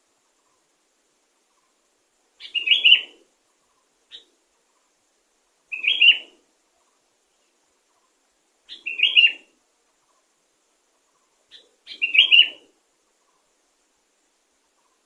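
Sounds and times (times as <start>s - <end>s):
bulbul singing: 2.4s - 3.1s, 8.7s - 9.4s, 11.5s - 12.6s.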